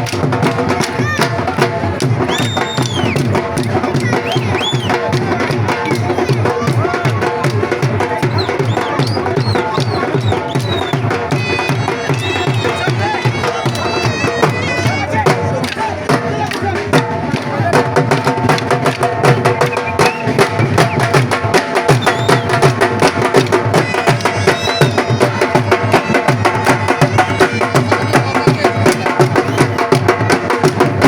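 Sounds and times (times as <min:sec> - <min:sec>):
crowd voices: 0:00.0 - 0:31.0
drums beating fast rhythm: 0:00.0 - 0:31.0.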